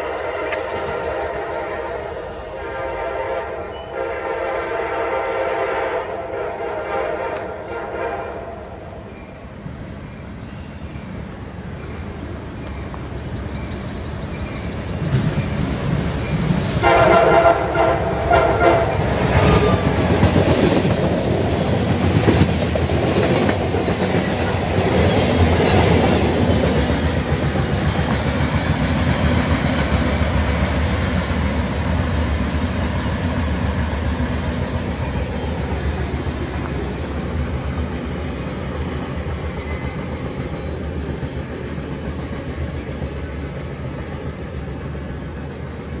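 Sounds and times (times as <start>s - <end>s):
train horn blast: 0.0s - 8.9s, 16.7s - 20.1s
freight train cars clattering: 11.1s - 45.9s.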